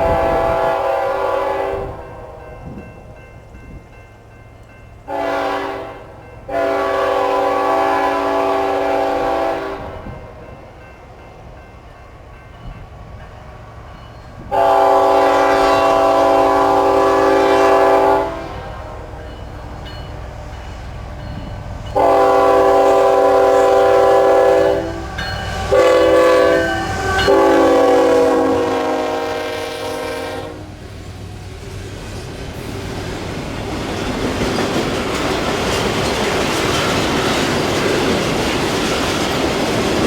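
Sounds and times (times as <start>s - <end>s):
locomotive air horn: 0.0s - 2.4s, 5.1s - 10.2s, 14.5s - 19.2s, 22.0s - 30.8s
passing train rumble: 0.0s - 40.0s.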